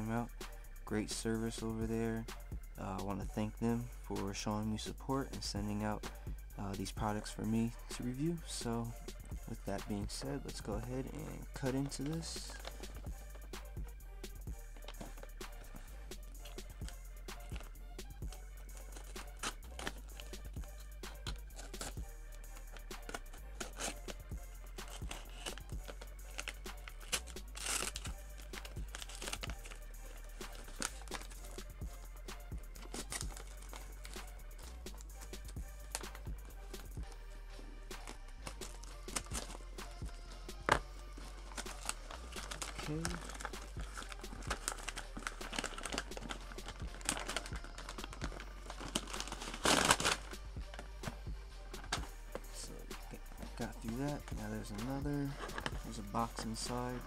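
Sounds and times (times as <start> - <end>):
background music: 0.0 - 57.0
package being cut and torn: 18.7 - 20.4, 21.1 - 22.0, 22.6 - 24.2, 24.8 - 31.6, 32.8 - 36.2, 37.9 - 50.3
paper ripping: 18.7 - 20.4, 21.1 - 22.0, 22.6 - 24.2, 24.8 - 31.7, 32.8 - 36.8, 37.9 - 51.2.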